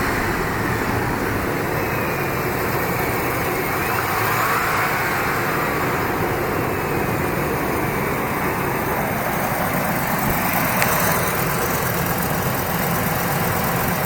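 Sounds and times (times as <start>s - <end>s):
wind noise on microphone: 0.0s - 2.7s
car engine idling: 0.0s - 14.0s.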